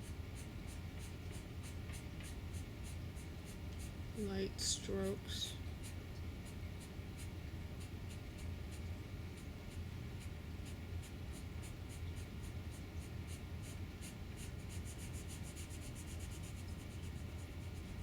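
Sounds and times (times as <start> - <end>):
steady low hum: 0.0 - 18.0
marker scratching strokes: 0.3 - 4.0, 9.4 - 18.0.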